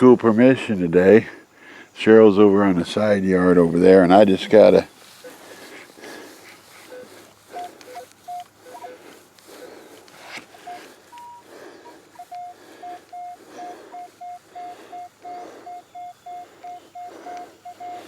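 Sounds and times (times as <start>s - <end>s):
metal detector beeps: 4.1s - 5.4s, 6.8s - 9.2s, 10.5s - 18.0s.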